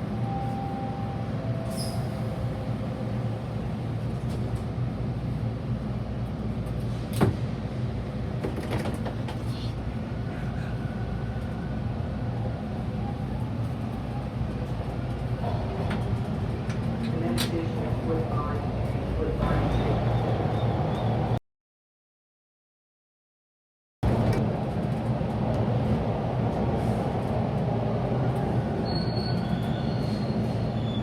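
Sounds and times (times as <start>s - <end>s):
subway train rumble and hum: 0.0s - 21.4s, 24.0s - 31.0s.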